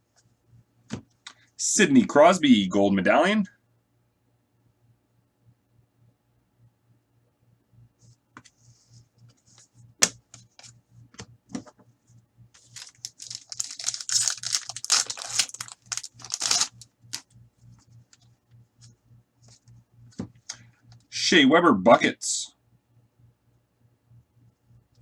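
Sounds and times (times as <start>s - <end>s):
foil wrapper tearing and crinkling: 12.6s - 17.2s.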